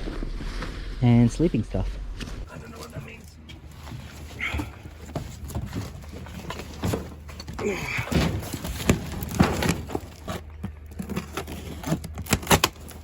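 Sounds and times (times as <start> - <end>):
items knocking and clattering: 3.4 - 13.0.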